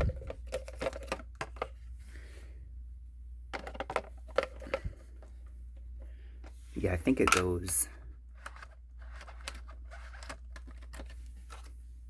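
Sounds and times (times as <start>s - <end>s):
plastic parts clicking: 0.0s - 1.7s, 8.4s - 11.7s.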